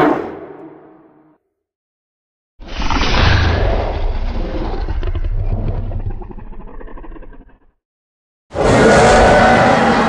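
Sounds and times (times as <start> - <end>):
deep animal-like growl: 2.6 - 7.8.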